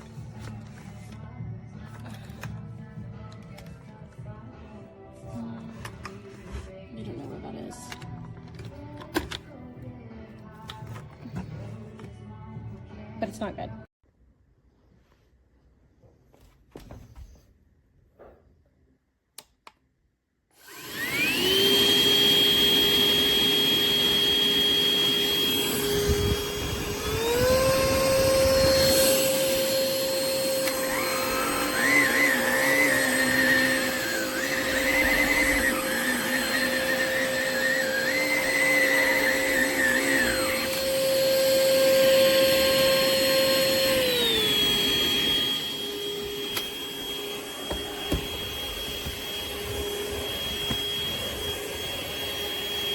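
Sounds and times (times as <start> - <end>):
vacuum motor whine: 20.6 - 52.9.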